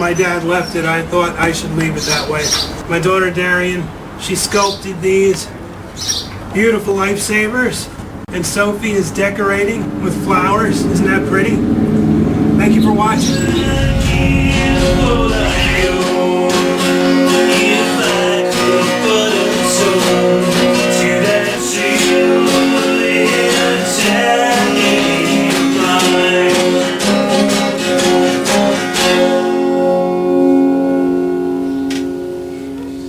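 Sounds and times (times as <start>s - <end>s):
acoustic guitar music: 11.7s - 33.0s.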